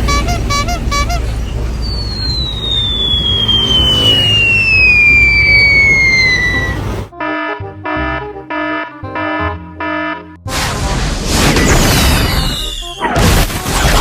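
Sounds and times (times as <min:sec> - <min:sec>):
low vehicle rumble: 0:00.0 - 0:07.1
falling whistle tone: 0:01.5 - 0:06.9, 0:12.1 - 0:13.1
electronic beeping: 0:01.8 - 0:06.8.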